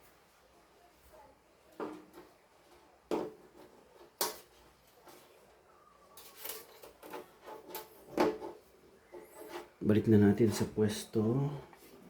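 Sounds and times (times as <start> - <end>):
parts clattering: 6.2 - 9.8.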